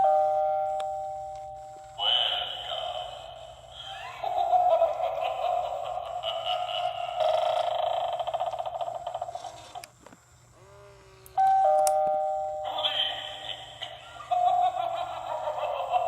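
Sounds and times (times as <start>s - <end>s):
doorbell chime: 0.0s - 1.9s, 11.4s - 13.2s
spooky sound clip from small speaker: 0.0s - 9.4s, 10.6s - 16.0s.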